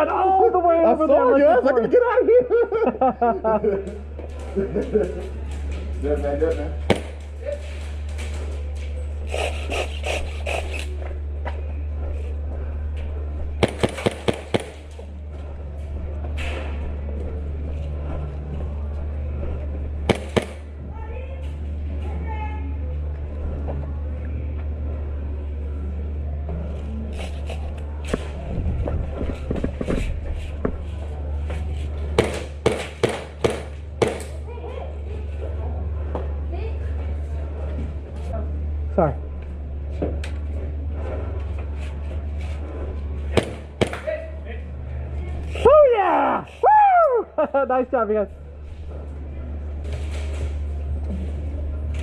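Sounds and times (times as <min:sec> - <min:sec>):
low hum: 0:01.8 - 0:52.0
airsoft gun shots: 0:06.9 - 0:07.2, 0:13.6 - 0:14.9, 0:20.1 - 0:20.6, 0:32.2 - 0:34.4, 0:43.3 - 0:44.1.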